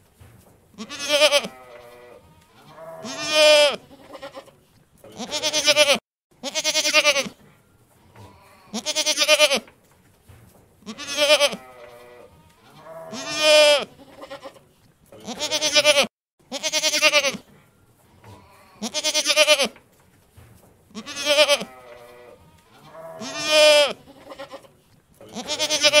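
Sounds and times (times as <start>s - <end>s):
goat bleating: 0.8s - 7.4s, 8.2s - 9.7s, 10.9s - 14.6s, 15.2s - 17.5s, 18.2s - 19.8s, 21.0s - 26.0s.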